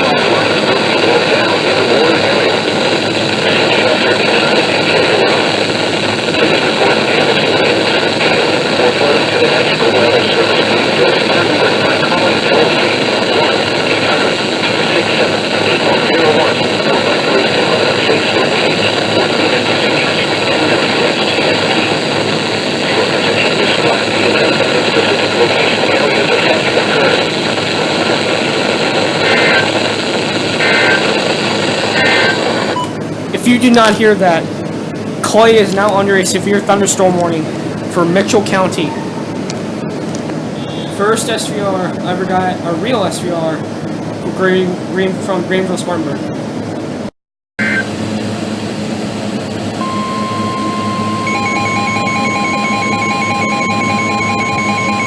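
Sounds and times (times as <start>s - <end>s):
radio static hiss: 0.0s - 43.7s, 47.6s - 55.0s
warbling data bursts: 49.8s - 55.0s.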